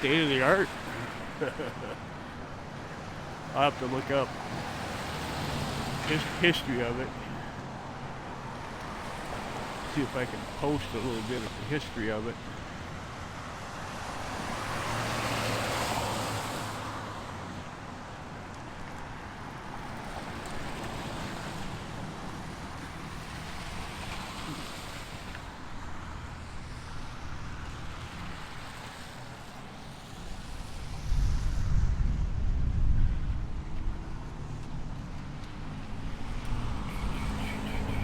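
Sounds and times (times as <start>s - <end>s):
vehicles passing: 0.0s - 38.0s
wind buffeting microphone: 30.3s - 38.0s.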